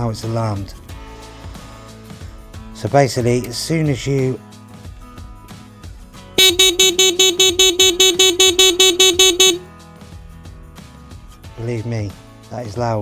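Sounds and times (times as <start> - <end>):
bike alarm beeping rapidly: 6.4 - 9.6.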